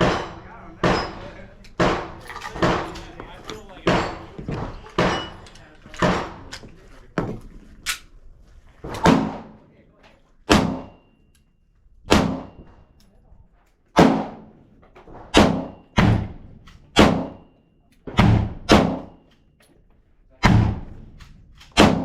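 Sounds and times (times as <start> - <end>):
handgun shots echoing: 20.4 - 22.0.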